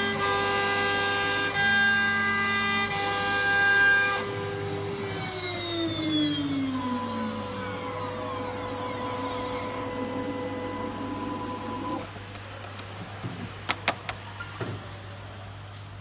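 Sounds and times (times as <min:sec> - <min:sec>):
router spindle motor whining: 0:00.0 - 0:12.1.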